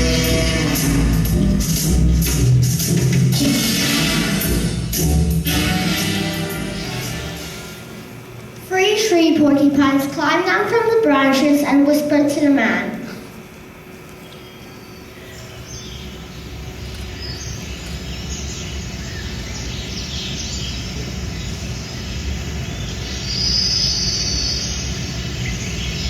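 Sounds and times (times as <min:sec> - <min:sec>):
birds chirping and calling: 0:14.2 - 0:26.0.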